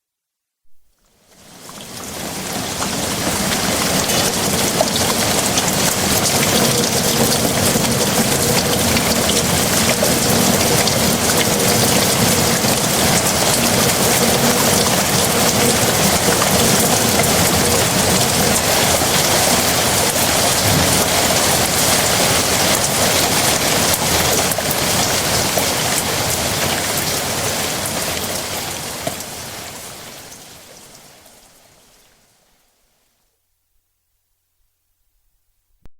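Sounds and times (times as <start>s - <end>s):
heavy rain: 1.2s - 33.0s.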